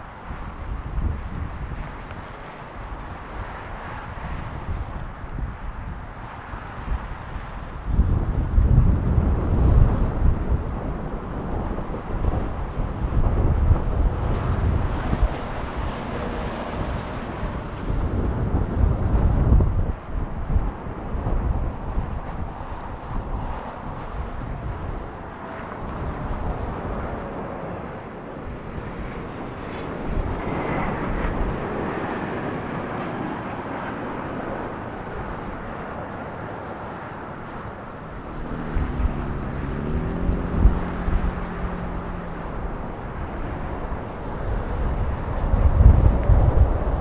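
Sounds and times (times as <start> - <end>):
jet engines rumbling: 0.0 - 47.0
wind buffeting microphone: 0.0 - 47.0
low hum rising in pitch: 38.3 - 42.8.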